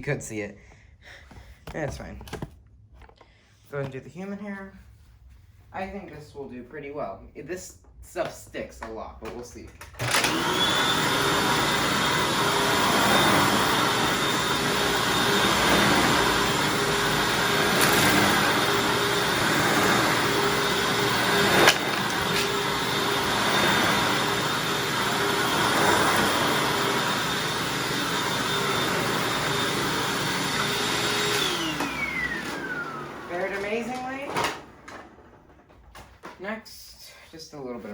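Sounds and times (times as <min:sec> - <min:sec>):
vacuum cleaner whining: 0:09.9 - 0:36.1
motor winding down: 0:10.0 - 0:32.9.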